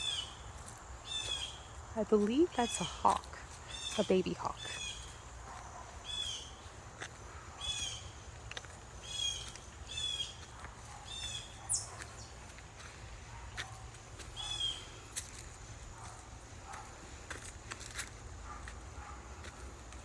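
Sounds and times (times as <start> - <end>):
raspy bird calls: 0.0 - 8.3, 9.0 - 12.5, 13.4 - 15.1.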